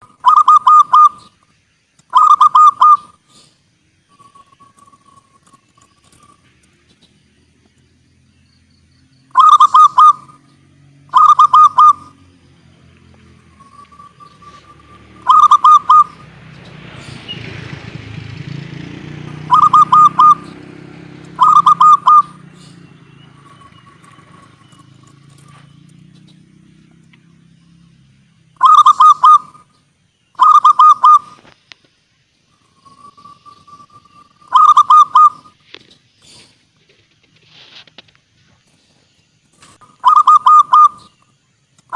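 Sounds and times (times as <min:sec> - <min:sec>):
dove cooing: 0:00.0 - 0:01.4, 0:02.1 - 0:03.5, 0:09.3 - 0:12.3, 0:13.3 - 0:27.1, 0:28.6 - 0:29.7, 0:30.4 - 0:31.5, 0:32.7 - 0:35.6, 0:39.6 - 0:41.2.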